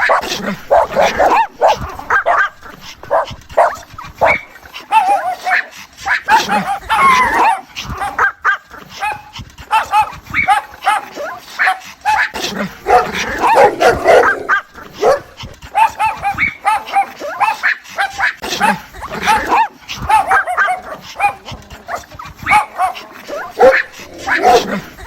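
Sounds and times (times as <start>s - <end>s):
dog whining yips: 0.7s - 5.7s, 9.8s - 10.6s, 13.4s - 16.8s, 23.3s - 24.6s.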